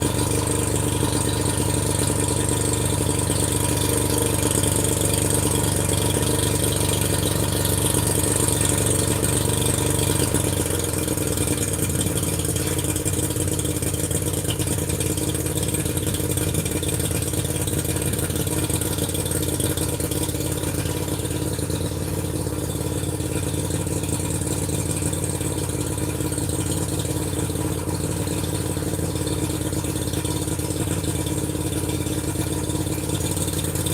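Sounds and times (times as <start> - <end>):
engine running with light rattle: 0.0 - 33.9.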